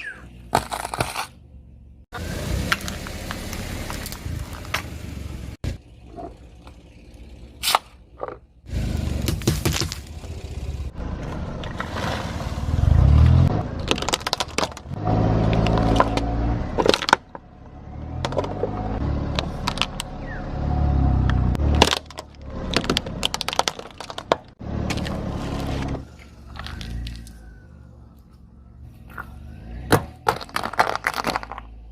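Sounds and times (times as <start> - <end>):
car engine: 0.0 - 31.9
tyres crushing crackers: 9.2 - 10.2, 13.8 - 17.4, 21.6 - 25.2, 30.0 - 31.9.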